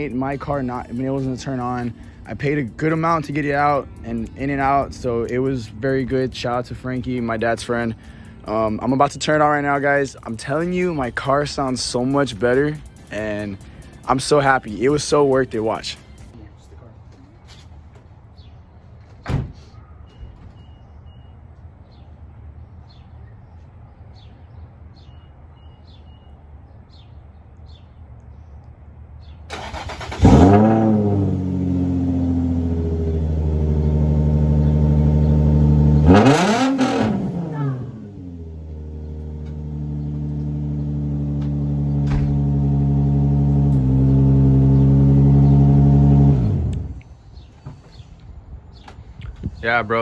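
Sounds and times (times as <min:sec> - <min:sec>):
car engine idling and revving: 0:00.0 - 0:15.8, 0:29.5 - 0:47.1.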